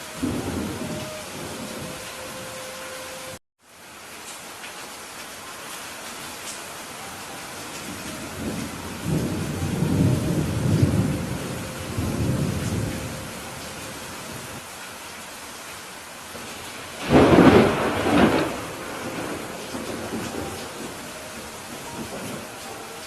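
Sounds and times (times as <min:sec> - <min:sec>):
thunder rumbling: 0:00.0 - 0:03.4, 0:07.0 - 0:14.6, 0:16.3 - 0:23.0
heavy rain hissing: 0:00.0 - 0:23.0
sharp thunderclap: 0:17.0 - 0:21.0.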